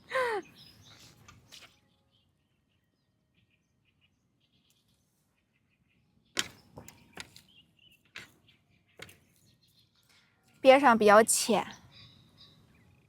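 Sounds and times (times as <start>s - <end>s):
distant small birds chirping: 0.0s - 13.0s.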